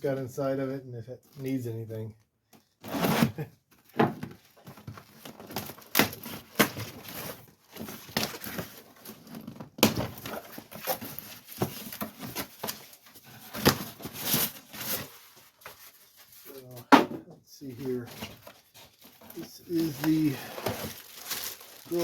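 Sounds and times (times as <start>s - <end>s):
packaging rustling and crinkling: 2.8s - 16.8s, 17.7s - 22.0s
knocks and thuds: 16.9s - 17.3s.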